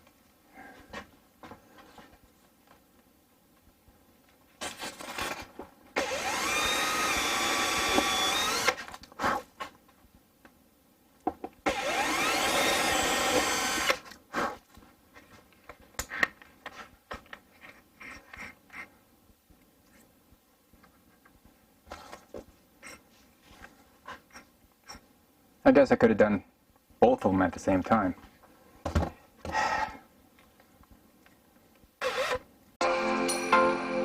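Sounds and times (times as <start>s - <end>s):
power drill running: 6.0s - 8.9s, 11.7s - 14.0s, 32.0s - 32.4s.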